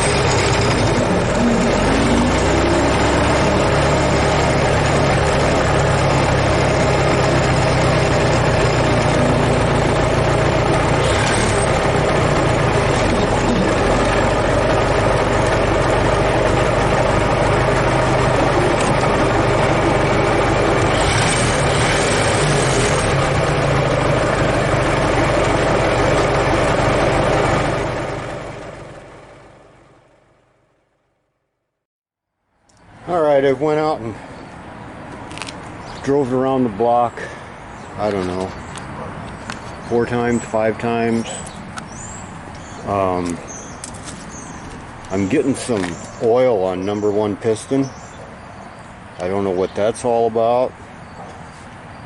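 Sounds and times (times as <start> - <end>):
car engine running: 0.0 - 30.7.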